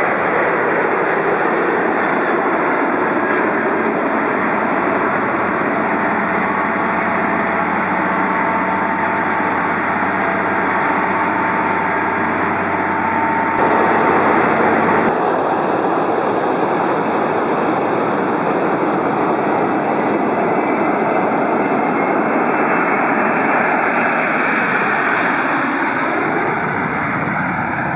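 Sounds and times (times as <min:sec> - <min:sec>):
jet engines roaring: 0:00.0 - 0:27.9.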